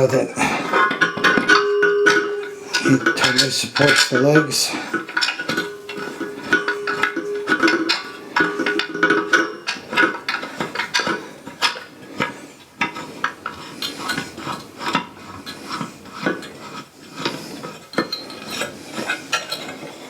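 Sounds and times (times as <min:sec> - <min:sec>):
metal clicks and clinks: 0:00.0 - 0:13.0.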